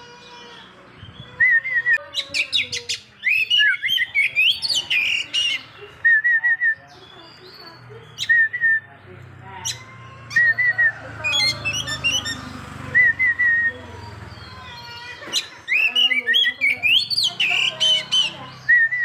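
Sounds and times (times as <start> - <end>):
bird singing whistled phrases: 1.0 - 7.5, 8.1 - 8.9, 10.4 - 14.5, 15.4 - 19.0.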